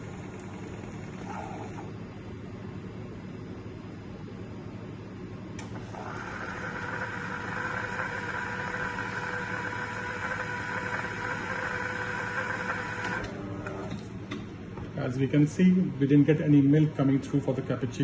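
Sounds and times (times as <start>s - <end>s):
coffee machine pump whining: 0.0s - 2.0s, 5.6s - 14.1s.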